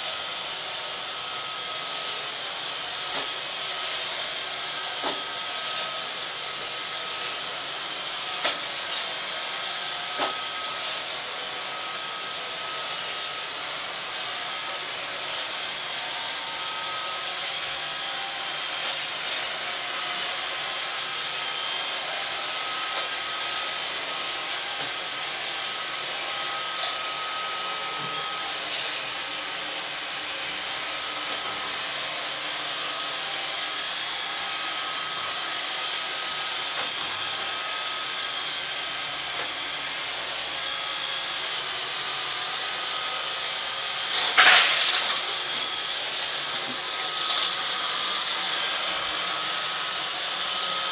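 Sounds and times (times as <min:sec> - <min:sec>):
robot vacuum running: 0:00.0 - 0:50.9.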